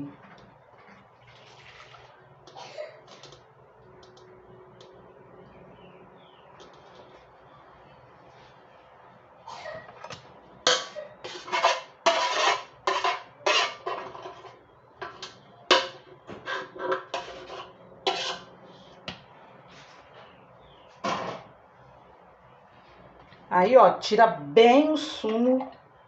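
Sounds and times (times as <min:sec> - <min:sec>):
spoon scraping in a sieve: 0:11.2 - 0:15.3, 0:16.4 - 0:18.5.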